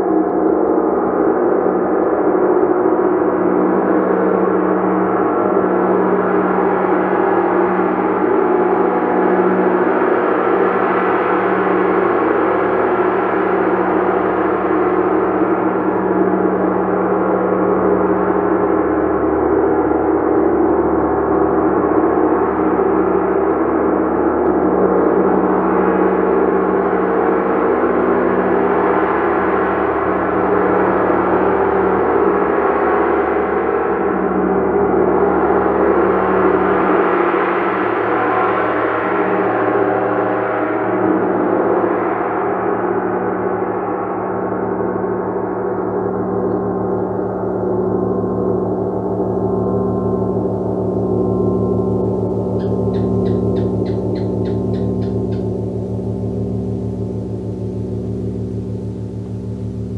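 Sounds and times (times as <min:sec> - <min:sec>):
shimmering gong: 0:22.3 - 0:59.9.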